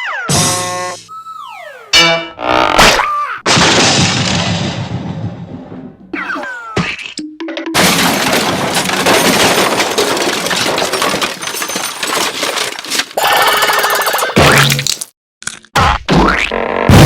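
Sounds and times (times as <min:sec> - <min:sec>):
warbling tone: 0:00.0 - 0:03.0
cartoon falling whistle: 0:00.0 - 0:03.3
crashing clatter: 0:07.8 - 0:13.2.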